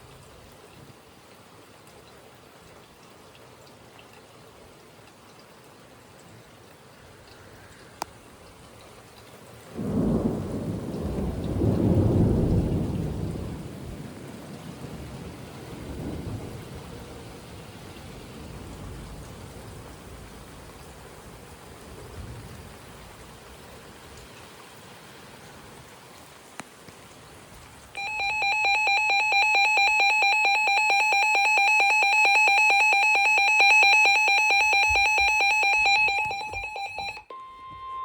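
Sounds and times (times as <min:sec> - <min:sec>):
rain falling steadily: 0:00.0 - 0:37.3
rapidly pulsing electronic alarm beep: 0:28.0 - 0:38.0.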